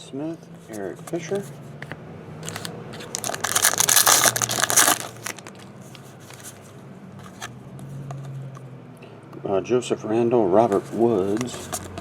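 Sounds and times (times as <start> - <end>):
foil wrapper tearing and crinkling: 2.5 - 5.6.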